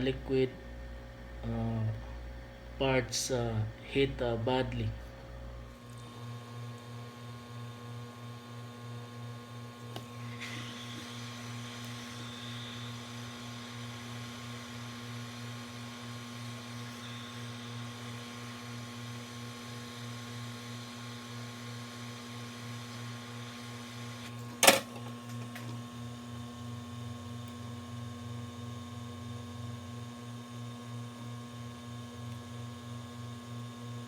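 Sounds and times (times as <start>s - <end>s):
electrical hum: 0.0s - 34.0s.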